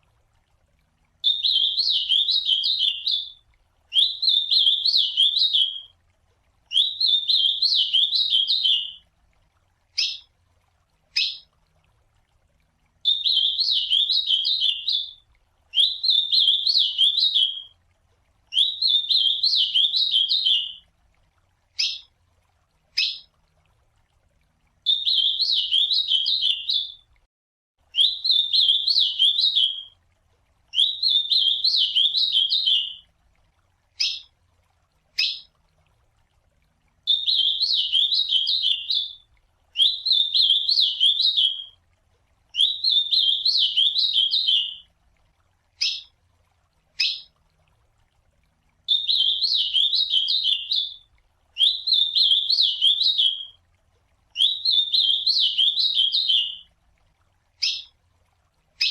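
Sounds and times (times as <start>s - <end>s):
bird warbling song: 1.2s - 5.9s, 6.7s - 9.0s, 10.0s - 10.3s, 11.1s - 11.5s, 13.0s - 17.7s, 18.5s - 20.8s, 21.8s - 22.1s, 23.0s - 23.4s, 24.9s - 27.0s, 28.0s - 29.9s, 30.8s - 33.1s, 34.0s - 34.3s, 35.2s - 35.6s, 37.1s - 39.2s, 39.8s - 41.8s, 42.6s - 44.8s, 45.8s - 46.2s, 47.0s - 47.4s, 48.9s - 53.6s, 54.4s - 56.7s, 57.6s - 58.0s.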